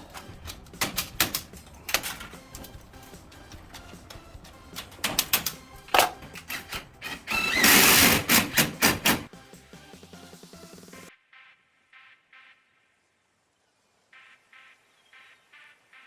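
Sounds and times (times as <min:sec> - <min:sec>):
background music: 0:00.0 - 0:13.1.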